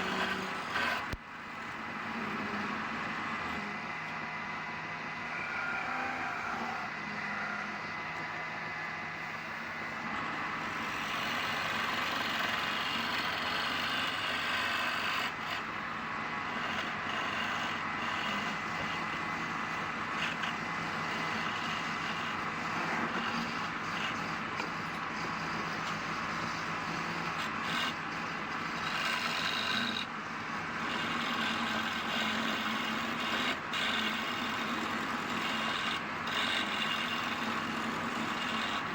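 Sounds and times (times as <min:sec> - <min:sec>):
lathe motor hum: 0:00.0 - 0:38.9
tool hissing on spinning wood: 0:10.6 - 0:15.8, 0:16.4 - 0:24.4, 0:26.2 - 0:38.9.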